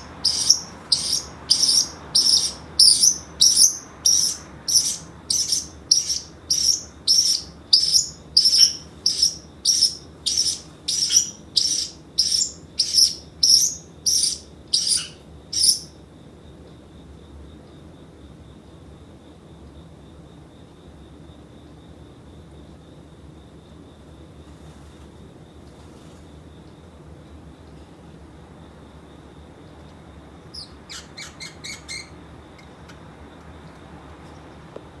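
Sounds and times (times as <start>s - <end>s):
parrotlet high-pitched chirps: 0.0s - 15.9s, 30.5s - 32.2s.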